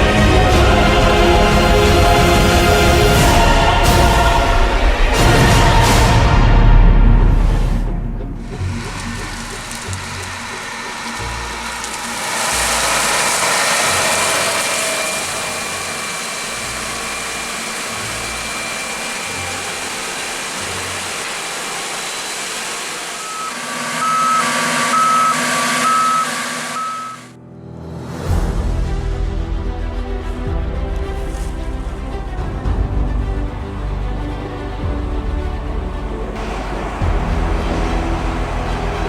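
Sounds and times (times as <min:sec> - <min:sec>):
heavy farm machinery running: 0:00.0 - 0:06.4, 0:08.2 - 0:27.3, 0:30.8 - 0:39.0
reversing alarm beeping: 0:22.0 - 0:27.4.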